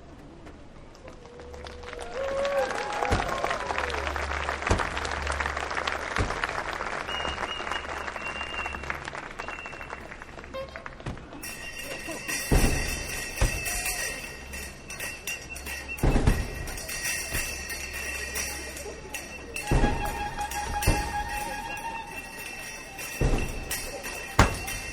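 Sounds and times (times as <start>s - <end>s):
crowd noise: 0.0s - 24.9s
people clapping: 0.5s - 12.7s
thumps: 4.7s - 5.2s, 6.1s - 6.7s, 10.6s - 24.9s
bells jingling: 11.2s - 24.9s.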